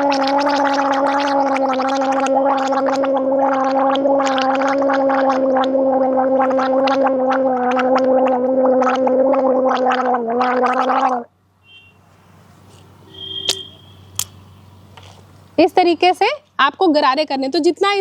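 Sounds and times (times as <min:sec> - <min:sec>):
woman gargling water: 0:00.0 - 0:11.3.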